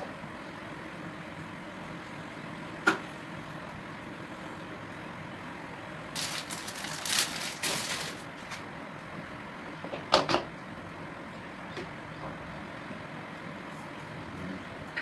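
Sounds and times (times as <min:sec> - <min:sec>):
steady background hum: 0:05.8 - 0:09.0
plastic rustling and clattering: 0:06.2 - 0:08.6.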